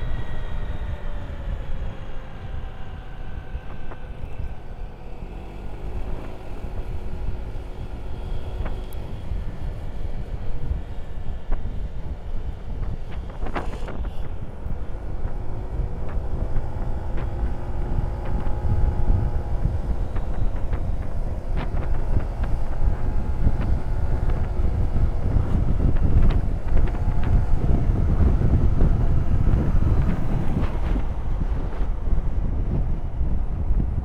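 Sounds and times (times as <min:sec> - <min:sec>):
motorcycle engine hum: 0:00.0 - 0:34.0
wind buffeting microphone: 0:00.0 - 0:34.0.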